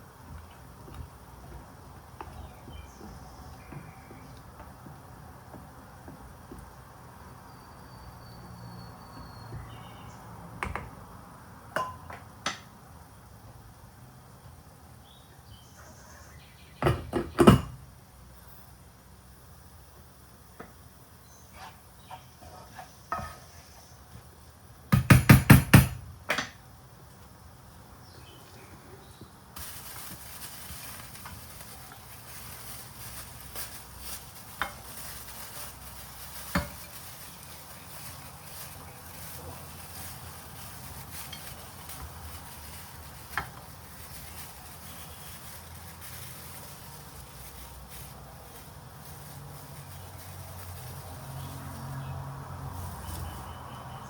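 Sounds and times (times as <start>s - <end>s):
kitchen knocks: 25.0s - 26.5s
steady hiss: 26.5s - 51.9s.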